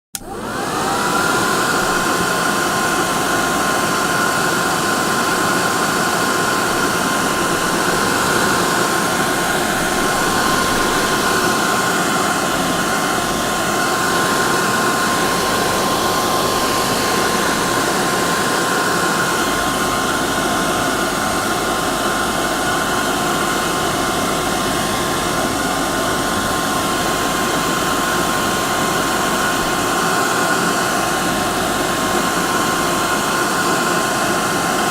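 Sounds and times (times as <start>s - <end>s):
hair dryer blowing air: 0.2s - 34.9s.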